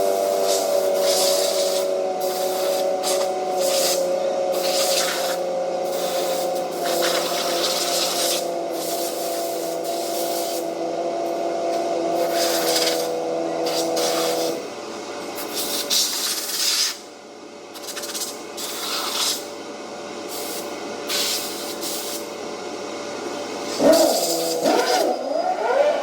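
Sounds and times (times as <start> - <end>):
pressurised spray hissing: 4.6 - 10.6.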